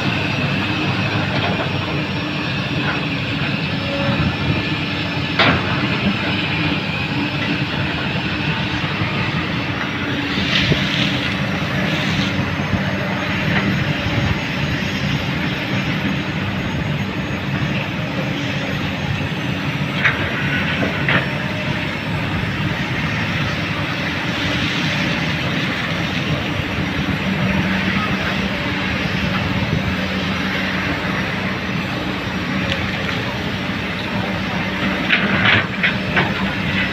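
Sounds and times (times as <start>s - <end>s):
excavator diesel engine running: 0.0s - 36.9s.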